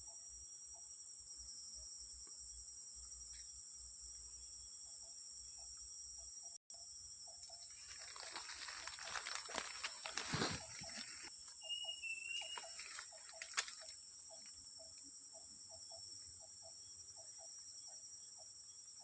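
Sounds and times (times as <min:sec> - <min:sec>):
high-pitched insect drone: 0:00.0 - 0:19.0
rustling: 0:07.7 - 0:11.3
whistled bird note: 0:11.6 - 0:13.0.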